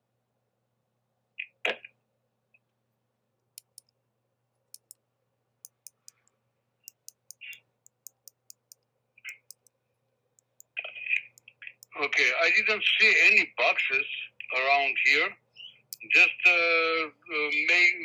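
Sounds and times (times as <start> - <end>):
faint steady hum: 2.0 - 18.0
sharp light clicks: 3.6 - 3.9, 4.7 - 5.0, 5.7 - 6.3, 6.9 - 9.7.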